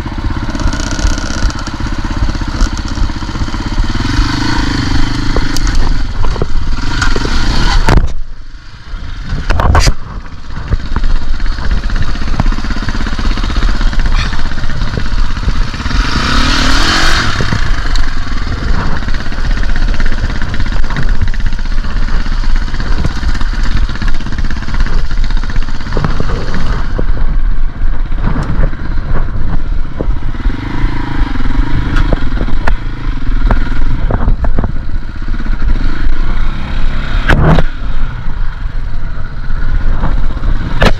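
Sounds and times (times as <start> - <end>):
dirt bike engine revving: 0.0 - 40.9
bike knocks and rattles: 0.4 - 4.2, 9.2 - 15.9, 17.0 - 30.3.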